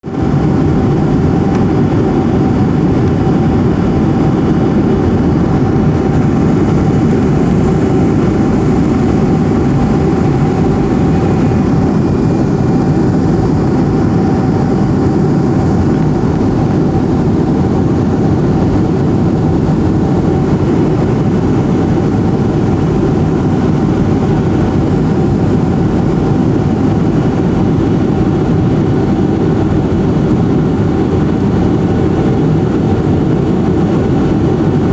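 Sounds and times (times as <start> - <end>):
airplane cabin roar: 0.0 - 34.9.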